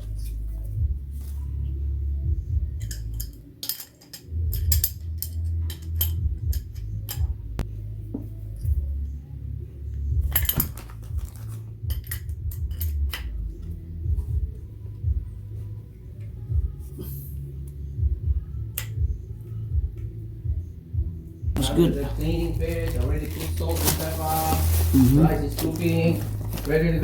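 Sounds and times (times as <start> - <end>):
steady low rumble: 0.0 - 3.4, 4.3 - 27.0
metallic clinks of hard objects: 2.8 - 7.4, 10.2 - 13.3.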